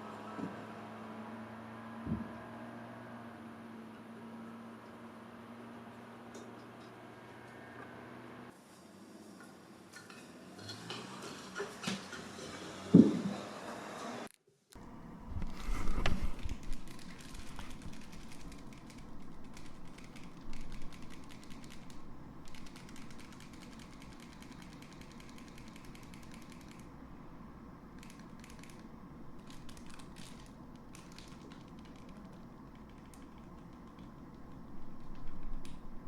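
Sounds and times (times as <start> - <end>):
cats' claws clicking and scratching: 14.8 - 27.0, 28.0 - 36.0.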